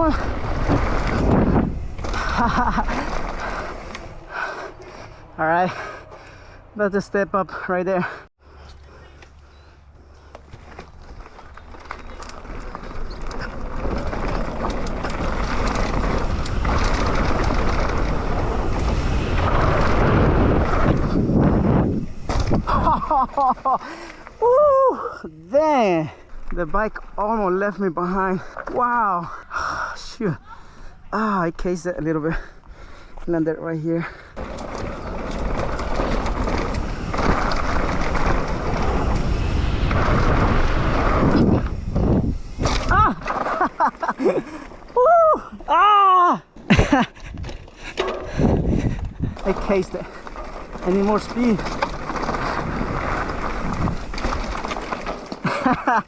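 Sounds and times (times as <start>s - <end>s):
wind rushing over microphone: 0.0s - 2.7s, 12.8s - 23.4s, 34.6s - 43.3s, 47.1s - 55.0s
bike clicks and rattles: 0.0s - 5.2s, 8.6s - 24.5s, 34.1s - 56.0s
bike tyres rolling on dirt: 0.0s - 56.0s.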